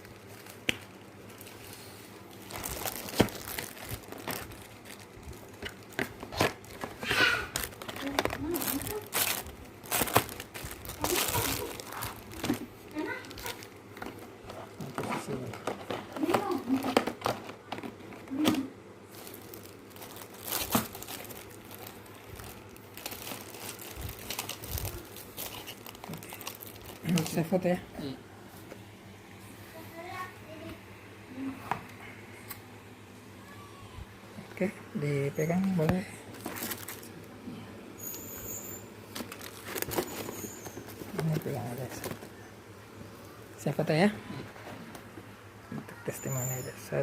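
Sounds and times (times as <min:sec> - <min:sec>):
crinkling and rustling: 0:00.0 - 0:27.8, 0:35.4 - 0:37.4, 0:38.0 - 0:43.2.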